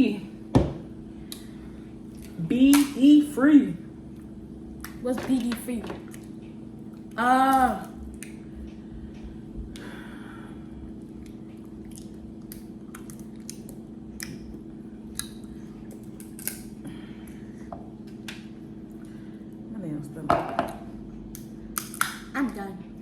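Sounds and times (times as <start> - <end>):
steady low hum: 0.0 - 23.0
people eating and chewing: 6.0 - 19.7
person humming: 7.2 - 8.0.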